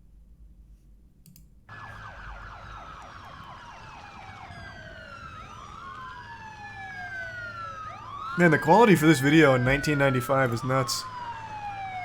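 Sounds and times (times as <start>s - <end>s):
soft clicks: 1.2s - 1.5s
emergency sirens: 1.7s - 12.0s.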